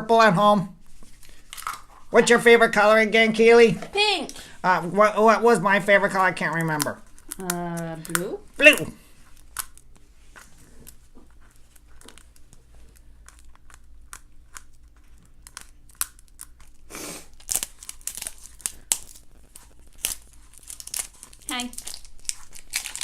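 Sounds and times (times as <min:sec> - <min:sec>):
plastic wrapper crinkling and tearing: 0:01.0 - 0:02.1, 0:06.4 - 0:23.0.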